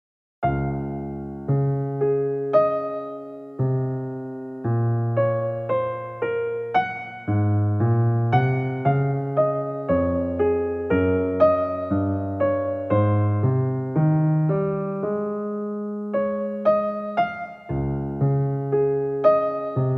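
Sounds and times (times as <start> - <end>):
soft piano chords: 0.4 - 19.9.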